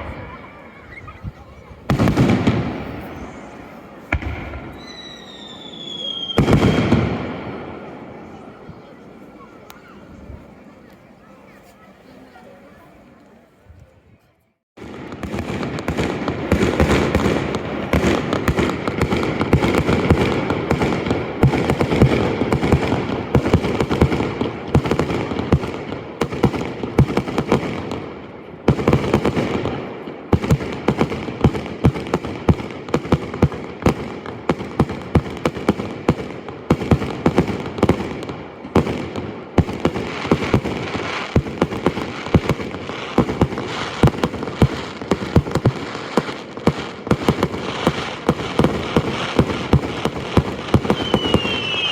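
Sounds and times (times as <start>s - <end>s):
fireworks bangs and crackles: 0.0s - 10.6s, 14.8s - 51.9s.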